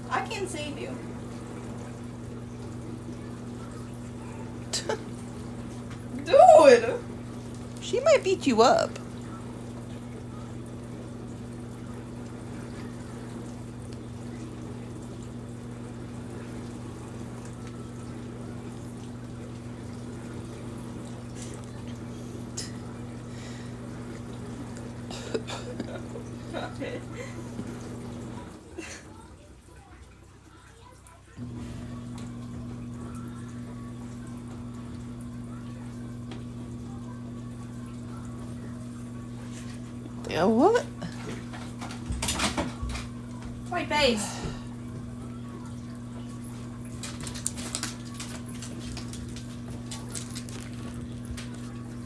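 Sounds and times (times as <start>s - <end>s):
low electrical hum: 0.0s - 52.0s.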